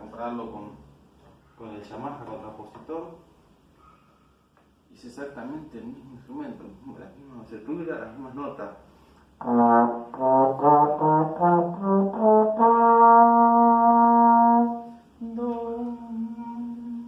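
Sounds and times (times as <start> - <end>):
trombone playing a scale: 9.4 - 15.0.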